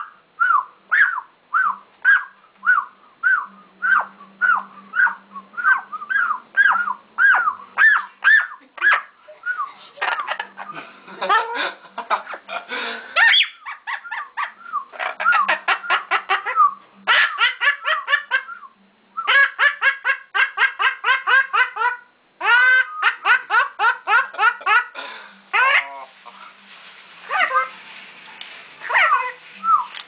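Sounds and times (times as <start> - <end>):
parrot laughing: 6.6 - 9.1, 9.9 - 12.6, 13.2 - 18.5, 19.3 - 26.0, 27.3 - 27.7, 28.8 - 29.4.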